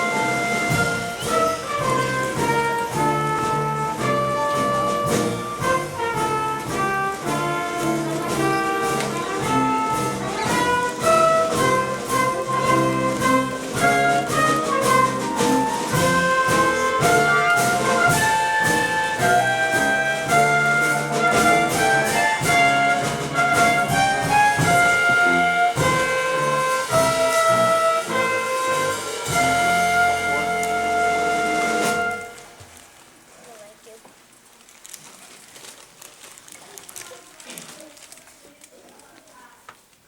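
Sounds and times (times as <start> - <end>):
steady percussion beat: 0.0 - 32.6
trumpets playing melody: 0.0 - 32.6
brass instrumental music: 0.0 - 32.7.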